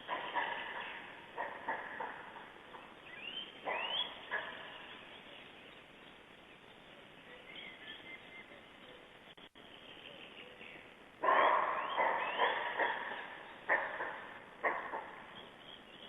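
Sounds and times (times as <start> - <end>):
steady outdoor hiss: 0.0 - 16.0
bird whistled calls: 3.1 - 4.8, 11.7 - 13.3.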